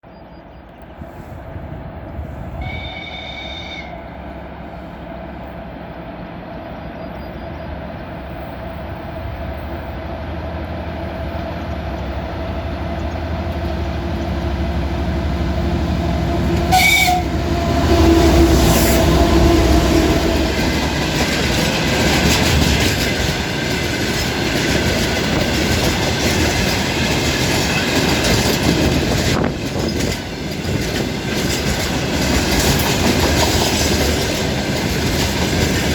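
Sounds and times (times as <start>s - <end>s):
diesel locomotive engine: 0.0s - 35.9s
two-tone train horn blast: 2.5s - 4.2s, 16.1s - 20.6s
train wheels clacking over rail joints: 20.0s - 35.9s.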